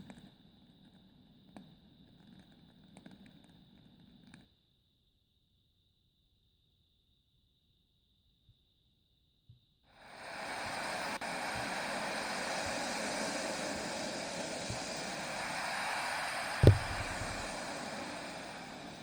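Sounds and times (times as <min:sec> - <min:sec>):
wood fire hissing: 0:10.0 - 0:19.0
low thump from fire: 0:16.6 - 0:17.6.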